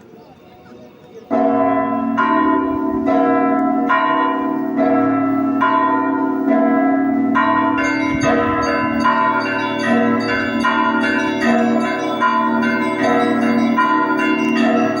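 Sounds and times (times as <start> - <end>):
hum of large bells: 1.3 - 15.0
small bells struck: 7.3 - 15.0.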